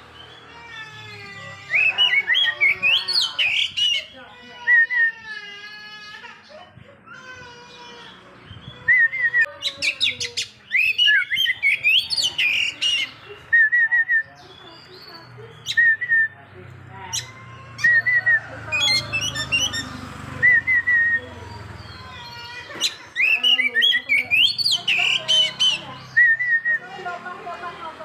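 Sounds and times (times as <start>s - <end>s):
bird singing with trills: 0.0s - 4.2s, 8.4s - 16.5s, 17.1s - 26.8s.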